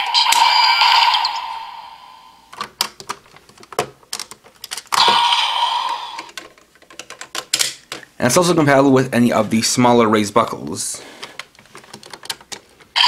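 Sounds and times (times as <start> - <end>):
electronic toy sound effect: 0.0 - 2.5, 5.0 - 6.4.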